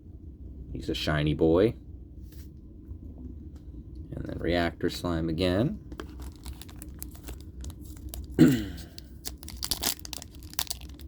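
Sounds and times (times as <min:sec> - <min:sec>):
cards rustling: 0:05.9 - 0:11.0
foil wrapper tearing and crinkling: 0:05.9 - 0:11.0.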